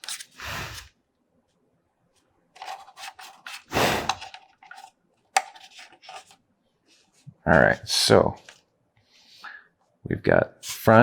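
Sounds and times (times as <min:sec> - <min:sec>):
plastic parts clicking and clattering: 0:02.6 - 0:06.4.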